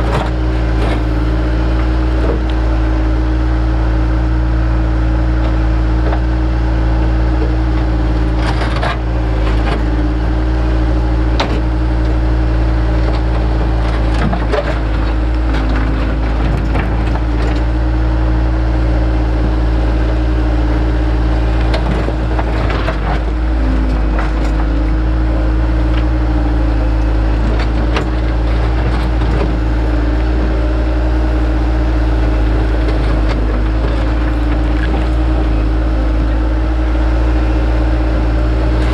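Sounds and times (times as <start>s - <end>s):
rock scraping and clunking: 0.0s - 2.6s, 7.4s - 18.1s, 19.5s - 36.7s
digging machine engine running: 0.0s - 38.9s.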